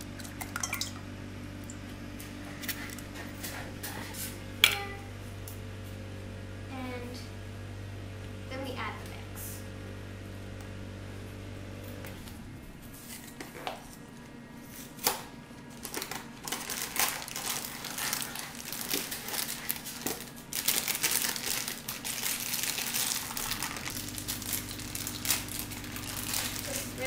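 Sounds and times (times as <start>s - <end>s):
packet crinkling as opened: 15.8s - 27.0s.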